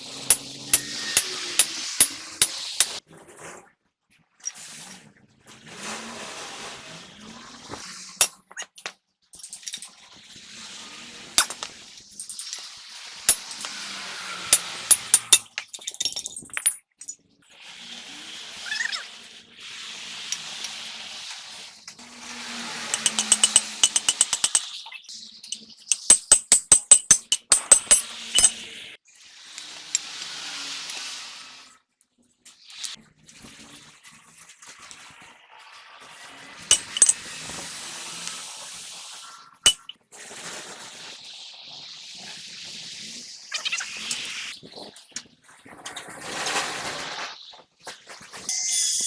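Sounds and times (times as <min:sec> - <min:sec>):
hammer striking steel: 0:00.3 - 0:03.0, 0:14.5 - 0:15.6, 0:22.9 - 0:24.7, 0:25.9 - 0:28.6, 0:36.7 - 0:37.2
metal-on-metal clinks: 0:14.5 - 0:17.2, 0:22.9 - 0:24.7, 0:25.9 - 0:28.6, 0:36.7 - 0:37.2, 0:39.7 - 0:39.9.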